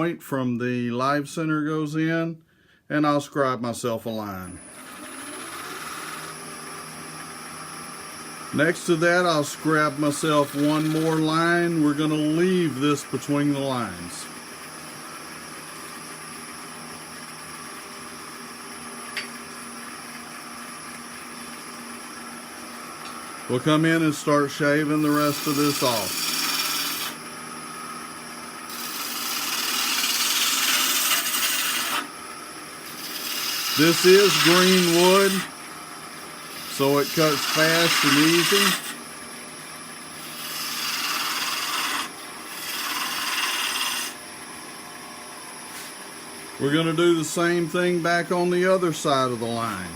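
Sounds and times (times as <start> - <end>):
wood lathe motor hum: 4.4 - 49.9
gouge shaving wood hiss: 8.6 - 11.4, 23.6 - 27.2, 28.7 - 32.1, 32.8 - 35.5, 36.4 - 39.0, 40.2 - 44.2.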